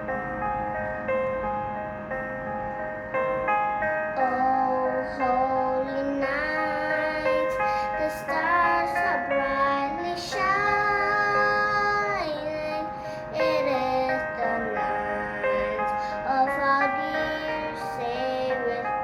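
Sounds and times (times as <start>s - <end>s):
instrumental accompaniment: 0.0s - 19.0s
child singing: 4.1s - 19.0s.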